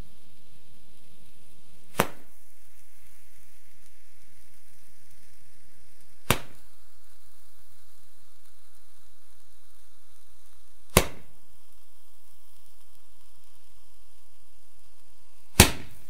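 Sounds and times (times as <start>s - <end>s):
firework shots popping: 0.0s - 16.0s
steady high hiss: 0.0s - 16.0s.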